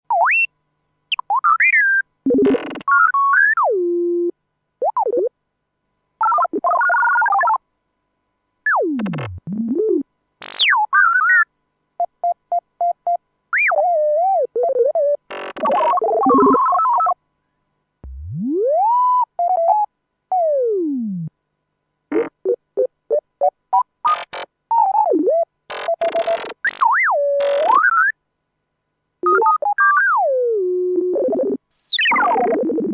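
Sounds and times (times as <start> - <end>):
robot electronic beeps and whistles: 10.4 - 11.4, 24.1 - 28.1, 31.2 - 32.9.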